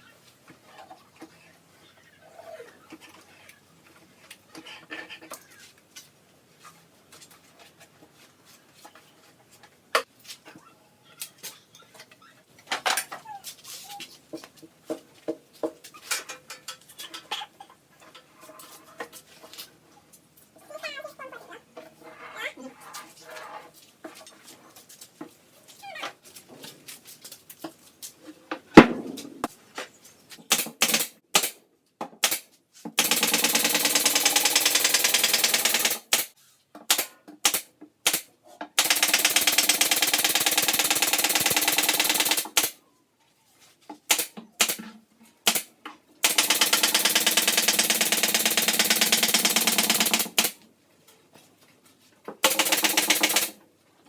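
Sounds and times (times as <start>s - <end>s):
sharp knock: 28.8s - 29.5s
power tool rattling: 33.0s - 36.3s, 38.8s - 42.7s, 46.2s - 50.5s, 52.4s - 53.6s.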